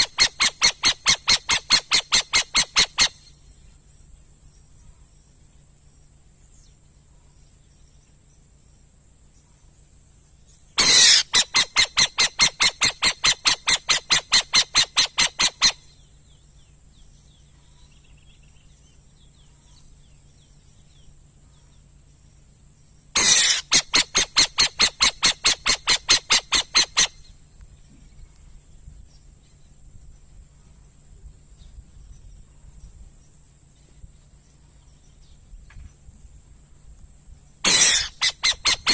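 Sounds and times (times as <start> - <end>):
owl calling: 0.0 - 3.4, 10.8 - 16.0, 23.2 - 27.3, 37.6 - 38.9.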